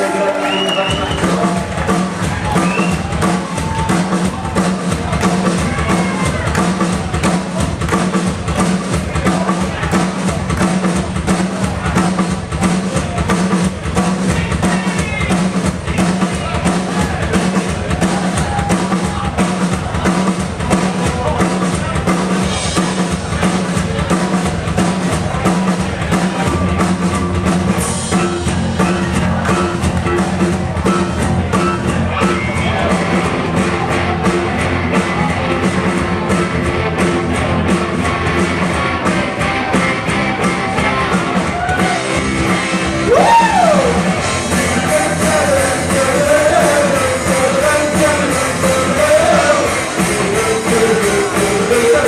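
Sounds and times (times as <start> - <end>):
drum kit beat: 0.0 - 52.0
live rock band playing: 0.0 - 52.0
person singing: 43.1 - 52.0.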